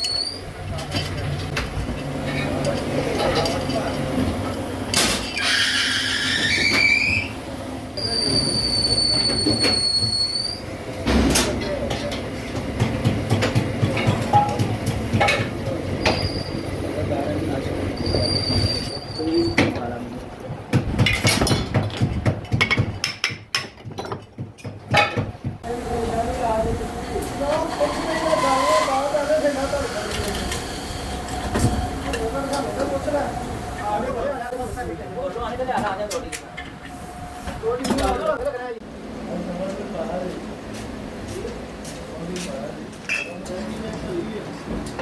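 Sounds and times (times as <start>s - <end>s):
machinery squealing metal on metal: 0.0s - 0.5s, 5.3s - 7.4s, 8.0s - 10.7s, 16.0s - 16.8s, 18.0s - 19.8s, 27.7s - 29.3s
knocks and clicks of hand work: 11.3s - 15.5s, 20.4s - 25.6s.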